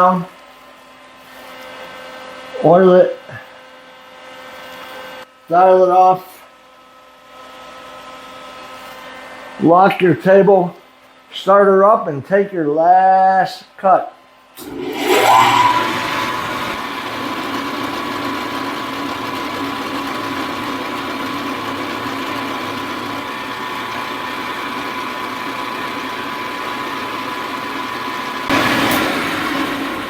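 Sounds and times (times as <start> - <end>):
milling machine spindle whine: 14.6 - 30.0.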